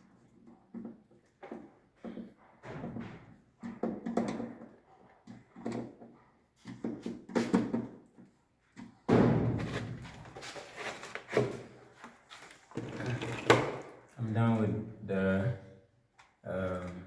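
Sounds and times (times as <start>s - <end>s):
rummaging clatter: 9.6s - 13.9s.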